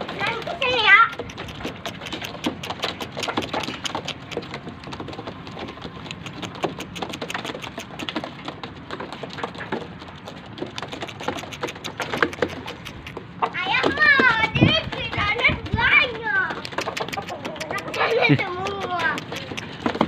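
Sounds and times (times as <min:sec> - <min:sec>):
pigeons pecking corn: 0:00.0 - 0:20.0.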